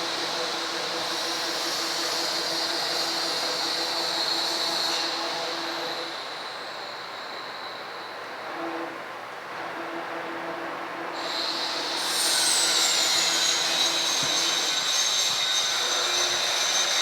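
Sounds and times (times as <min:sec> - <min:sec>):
milling machine running: 0:00.0 - 0:08.5, 0:11.2 - 0:17.0.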